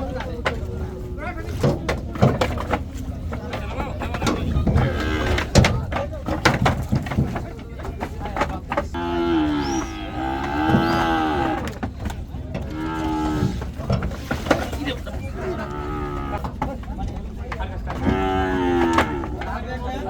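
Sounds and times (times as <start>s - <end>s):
cattle mooing: 4.6s - 5.6s, 9.0s - 11.8s, 12.6s - 13.8s, 15.3s - 16.4s, 17.9s - 19.5s.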